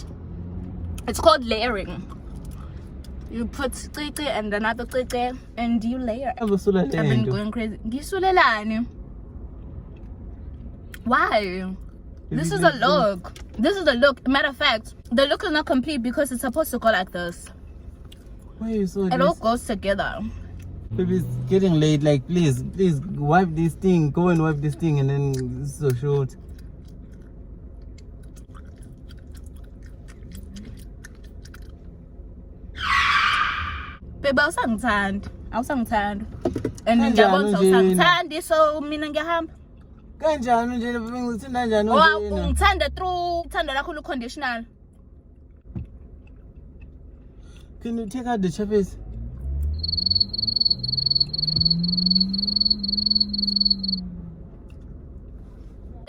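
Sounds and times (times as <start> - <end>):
low steady hum: 0.0 - 32.8
wet gum chewing smacks: 26.4 - 31.9
low hum rising in pitch: 49.0 - 54.8
cricket chirping: 49.5 - 54.2.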